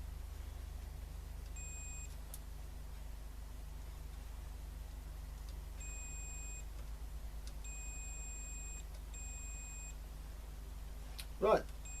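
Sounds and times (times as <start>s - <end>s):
low steady hum: 0.0s - 12.0s
electronic beeps: 1.6s - 2.1s, 5.8s - 6.6s, 7.6s - 10.0s.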